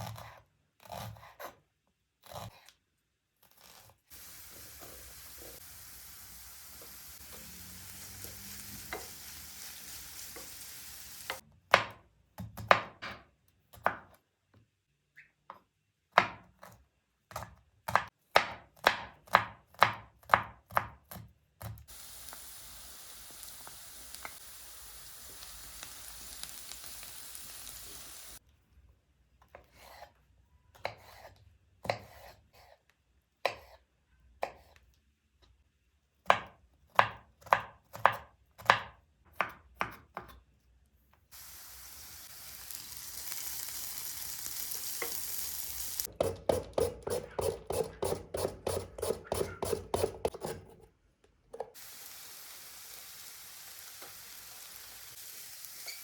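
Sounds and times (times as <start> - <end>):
vegetables sizzling in oil: 4.1 - 11.4, 21.9 - 28.4, 41.3 - 46.1, 51.8 - 56.0
knife chopping on cutting board: 11.3 - 14.2, 16.1 - 21.8, 30.8 - 32.8, 33.4 - 33.8, 36.2 - 40.4, 46.1 - 50.8.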